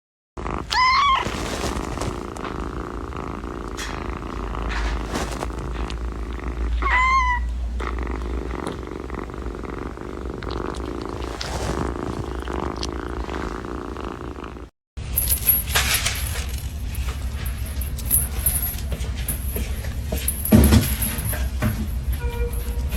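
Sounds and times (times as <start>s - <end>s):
cat purring: 0.4s - 14.7s
cat meows: 0.7s - 1.6s, 6.8s - 7.6s.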